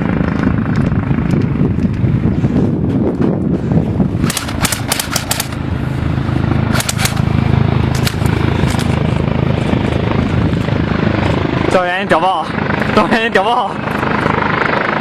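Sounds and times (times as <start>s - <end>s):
helicopter rotor drone: 0.0s - 15.0s
sharp cracks: 4.2s - 5.6s, 6.7s - 9.0s.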